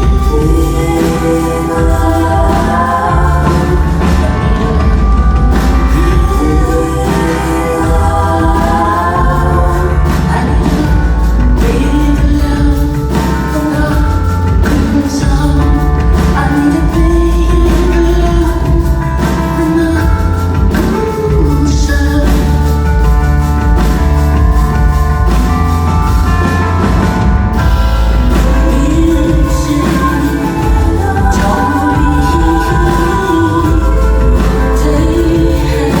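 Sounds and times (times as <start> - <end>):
woman singing: 0.0 - 26.8, 27.6 - 36.0
band playing with bass line: 0.0 - 36.0.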